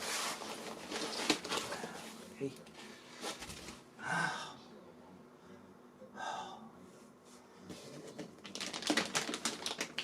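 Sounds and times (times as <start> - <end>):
packaging crackling: 8.4 - 10.0.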